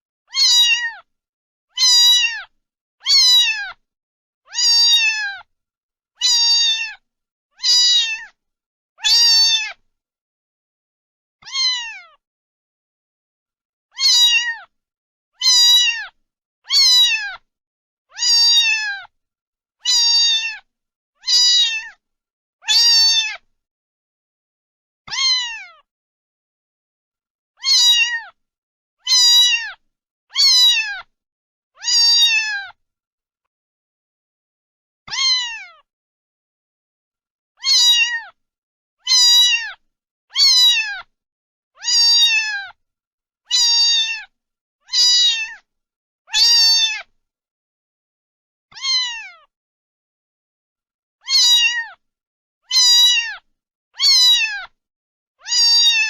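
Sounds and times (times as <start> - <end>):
cat meowing: 0.3 - 1.1, 1.7 - 3.8, 4.5 - 5.5, 6.2 - 7.0, 7.6 - 8.4, 9.0 - 9.8, 11.4 - 12.2, 13.9 - 14.7, 15.4 - 17.5, 18.1 - 19.1, 19.8 - 22.0, 22.6 - 23.4, 25.1 - 25.9, 27.6 - 28.4, 29.0 - 31.1, 31.8 - 32.8, 35.1 - 35.9, 37.6 - 38.4, 39.0 - 41.1, 41.8 - 42.8, 43.5 - 45.6, 46.3 - 47.1, 48.7 - 49.5, 51.2 - 52.0, 52.7 - 54.8, 55.4 - 56.0.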